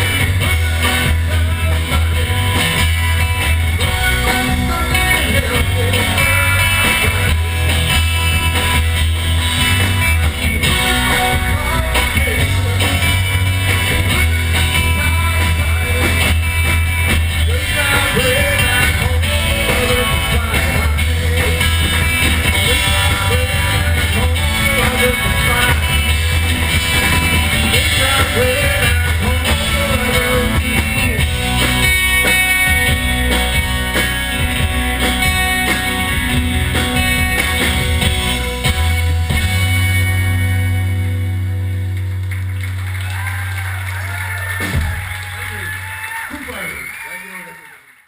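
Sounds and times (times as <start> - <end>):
person singing: 0.0 - 2.6, 3.6 - 7.5, 10.6 - 13.5, 14.7 - 16.7, 17.4 - 26.4, 27.2 - 31.7
drum kit: 0.0 - 46.9
bass guitar: 0.0 - 47.0
electric guitar: 0.0 - 47.9.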